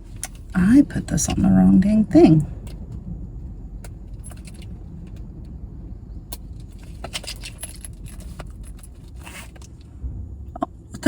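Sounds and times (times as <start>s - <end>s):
low rumble inside car: 0.0s - 11.0s
small objects clicking and jingling: 6.3s - 9.8s.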